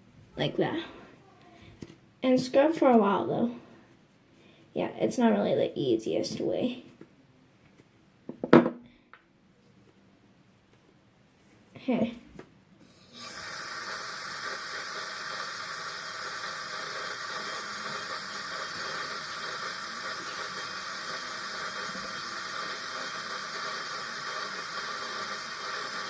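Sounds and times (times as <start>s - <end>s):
water running from faucet: 12.9s - 26.0s.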